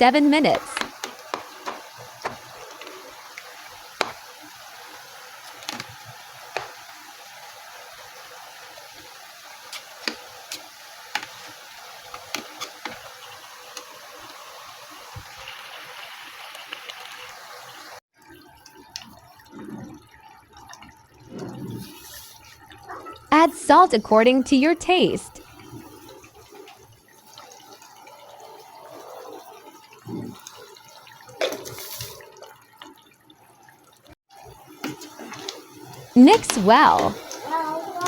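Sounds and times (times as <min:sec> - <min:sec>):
curry sizzling in a pan: 0:01.0 - 0:18.0.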